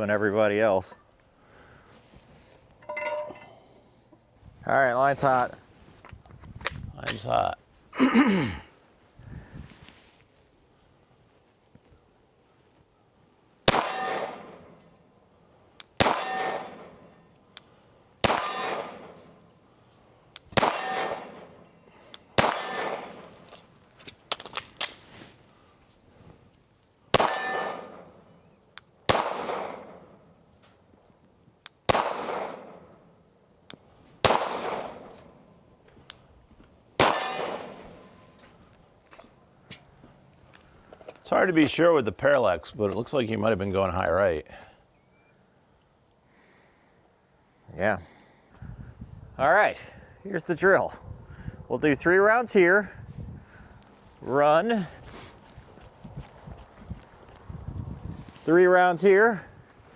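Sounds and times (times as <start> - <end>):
steel targets clanging: 2.8 - 3.8, 13.8 - 14.6, 16.1 - 17.0, 18.3 - 19.3, 20.6 - 21.6, 22.4 - 23.4, 27.2 - 28.0, 37.0 - 38.2
gunshots: 13.7 - 14.7, 16.0 - 17.0, 18.2 - 19.2, 20.6 - 21.6, 22.4 - 23.4, 27.1 - 28.1, 29.1 - 30.0, 31.9 - 32.8, 34.2 - 35.2, 37.0 - 38.0.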